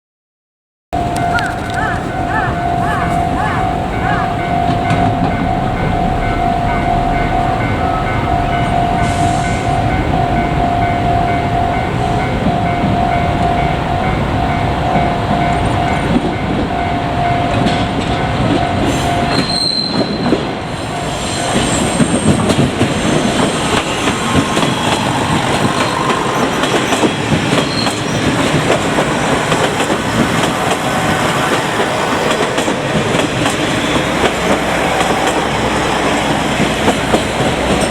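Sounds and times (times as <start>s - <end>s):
level crossing warning bell: 1.0s - 37.9s
high wheel squeal: 18.8s - 32.2s
train wheels clattering over rail joints: 21.5s - 37.9s.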